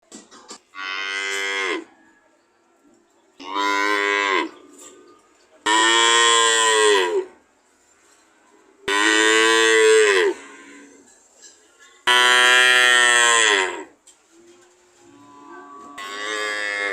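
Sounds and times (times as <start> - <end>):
cow mooing: 0.8 - 1.9, 5.7 - 7.3, 8.9 - 10.9, 12.1 - 13.9, 15.2 - 16.9.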